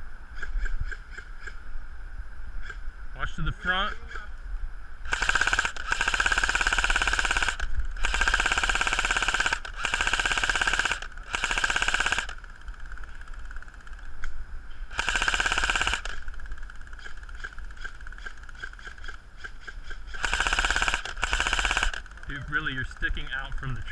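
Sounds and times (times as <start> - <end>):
airsoft machine gun bursts: 5.1 - 14.0, 14.9 - 19.2, 20.0 - 23.2.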